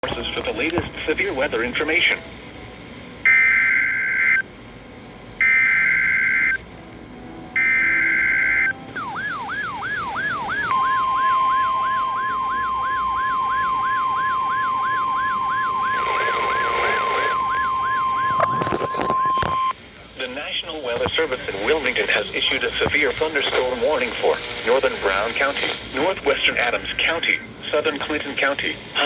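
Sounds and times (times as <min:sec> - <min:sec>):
siren-like sweeping tone: 0:07.6 - 0:18.6
steady single-pitch alarm tone: 0:07.6 - 0:19.7
screechy two-pitch data bursts: 0:10.7 - 0:18.6.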